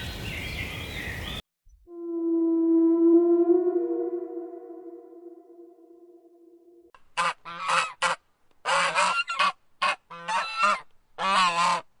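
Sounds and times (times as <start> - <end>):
waterfowl honking: 7.1 - 11.9.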